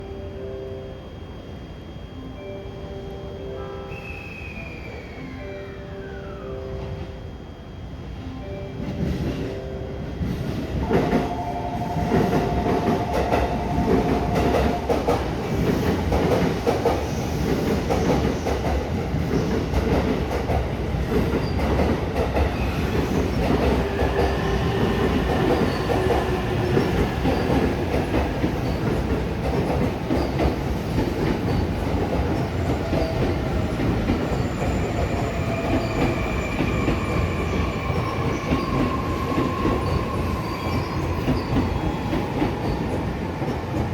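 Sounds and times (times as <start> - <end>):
train wheels squealing: 3.6 - 6.8, 21.3 - 29.0, 31.5 - 43.9.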